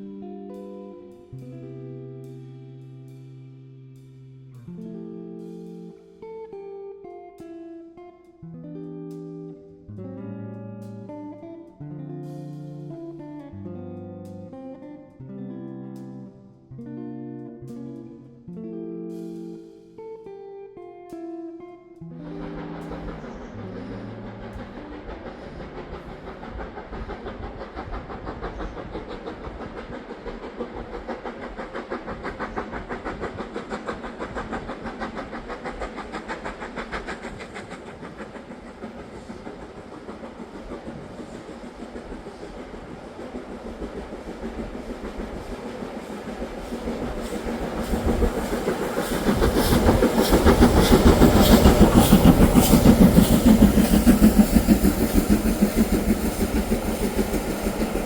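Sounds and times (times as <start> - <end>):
steam train running: 22.2 - 58.0.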